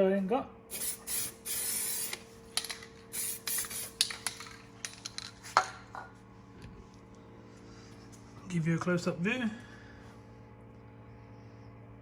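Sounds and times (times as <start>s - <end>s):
spray can hissing: 0.7s - 2.2s, 3.1s - 4.1s.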